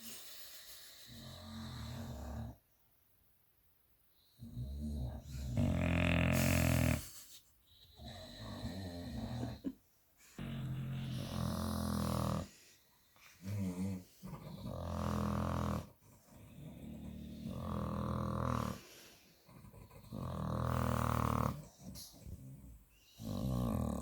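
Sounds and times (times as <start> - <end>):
dog snoring: 1.1 - 2.6, 4.4 - 7.1, 7.9 - 9.7, 10.4 - 12.6, 13.4 - 24.0.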